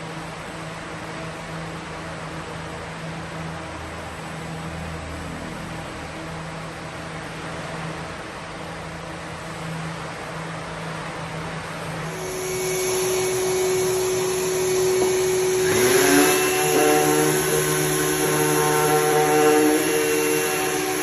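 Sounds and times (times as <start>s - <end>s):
electric motor humming: 12.0s - 21.0s.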